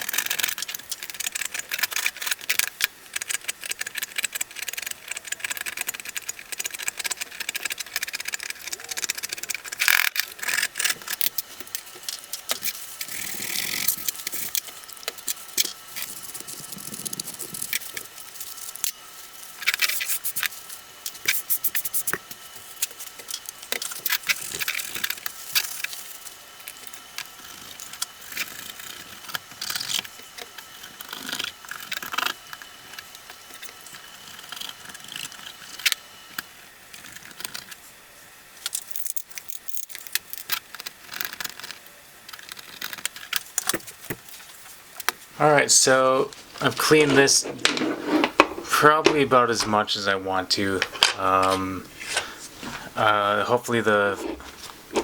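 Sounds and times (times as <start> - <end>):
tool scraping dust off metal: 45.9 - 49.8.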